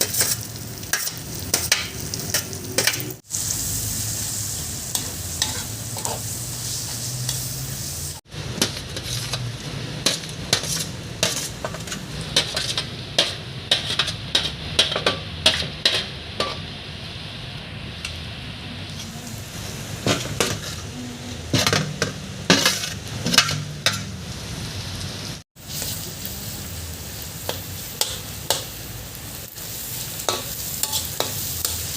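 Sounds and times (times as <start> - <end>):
food sizzling in a pot: 0.0 - 31.9
utensil scraping a pot: 8.6 - 16.6.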